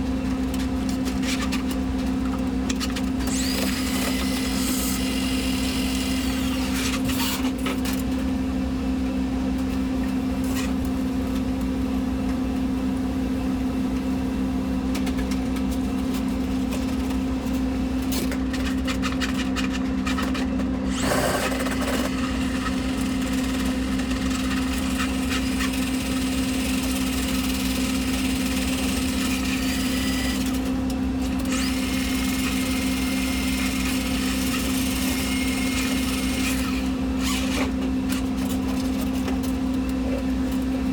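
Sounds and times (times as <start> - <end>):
power tool motor humming: 3.2 - 7.5, 20.9 - 30.7, 31.4 - 38.2.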